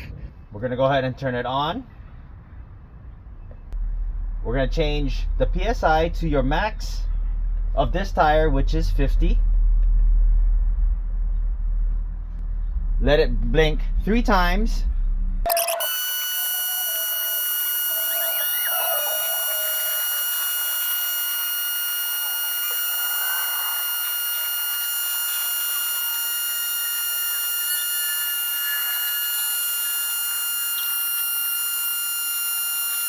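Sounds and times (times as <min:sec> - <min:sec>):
air compressor whining: 0:15.5 - 0:33.0.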